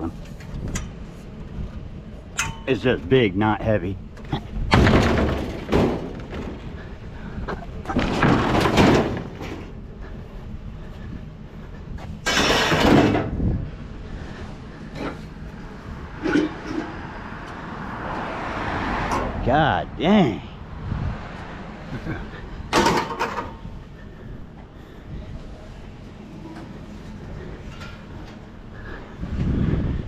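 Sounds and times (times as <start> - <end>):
steady low rumble: 0.0 - 30.0
scrap scraping and clattering: 7.5 - 9.8, 12.2 - 13.4, 16.1 - 17.2, 26.0 - 29.0.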